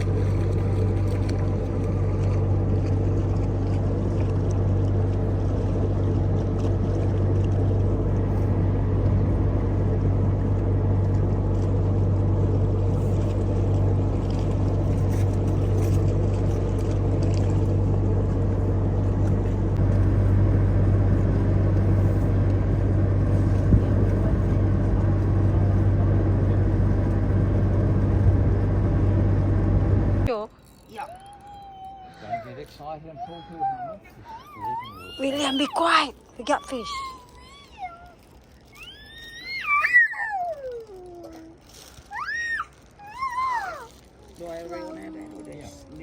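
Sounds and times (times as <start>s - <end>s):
boat engine droning: 0.0s - 46.0s.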